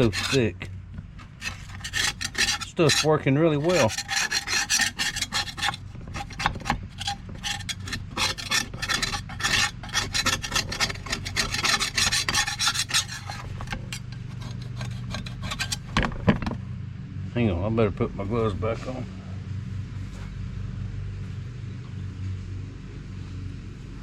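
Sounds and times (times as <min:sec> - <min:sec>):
paint scraper rasping on metal: 0:00.0 - 0:00.6, 0:01.2 - 0:16.0.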